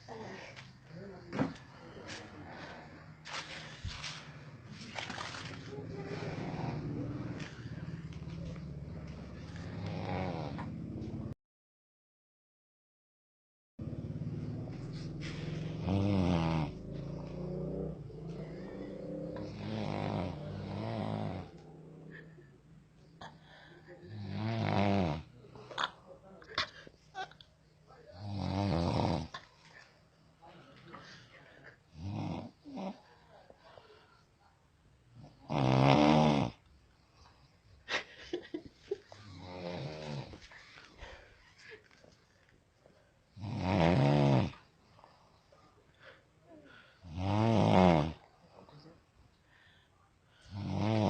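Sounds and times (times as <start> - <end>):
people snoring: 5.5 - 11.0, 13.9 - 26.0, 28.0 - 29.6, 31.2 - 33.2, 35.1 - 36.7, 39.0 - 41.2, 43.3 - 48.7, 50.4 - 51.0.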